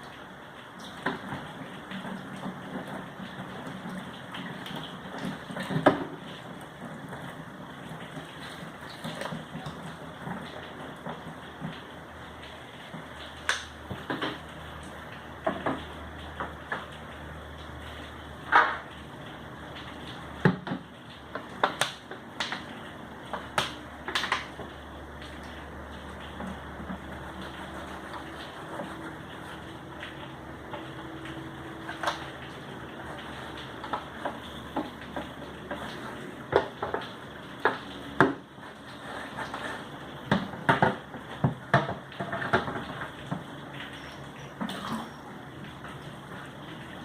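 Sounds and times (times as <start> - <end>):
hard objects knocking and clattering: 33.2 - 43.4.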